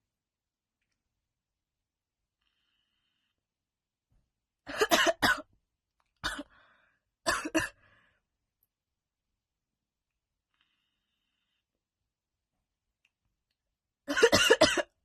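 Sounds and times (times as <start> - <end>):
woman coughing: 4.7 - 5.4, 7.3 - 7.8, 14.1 - 14.9.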